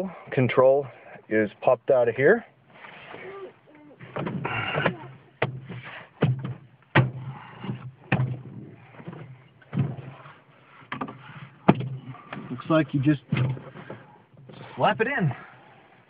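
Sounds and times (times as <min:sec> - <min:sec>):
plastic panel scraping and rattling: 0:05.5 - 0:14.7.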